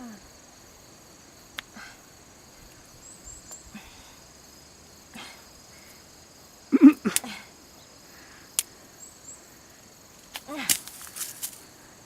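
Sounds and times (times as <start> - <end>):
soft clicks and rustles: 10.2 - 11.7.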